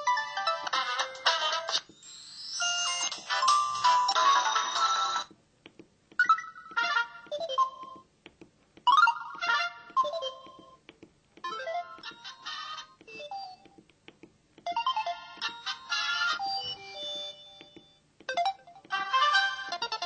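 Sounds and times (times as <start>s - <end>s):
phone ringtone jingles: 2.0s - 5.2s.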